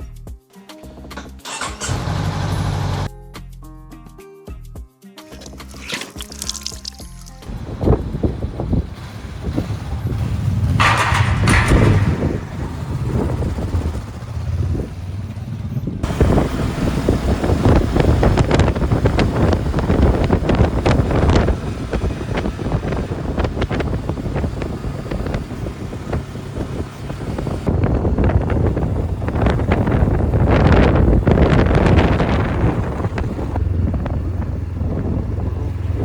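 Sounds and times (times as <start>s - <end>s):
wind buffeting microphone: 7.4s - 36.0s.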